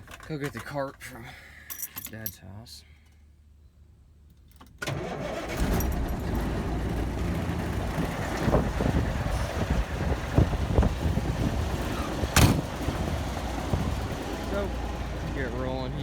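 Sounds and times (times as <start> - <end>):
truck engine rumbling: 4.9 - 16.0.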